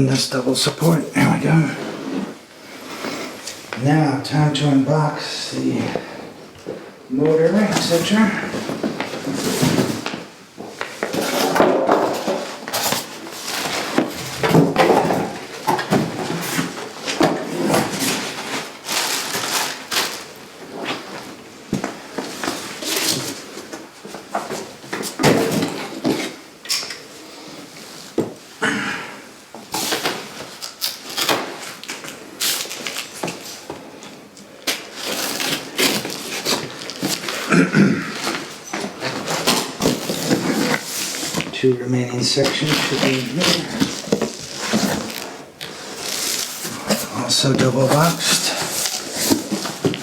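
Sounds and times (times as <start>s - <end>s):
cardboard box rustling and scraping: 38.2s - 41.6s, 42.4s - 50.0s.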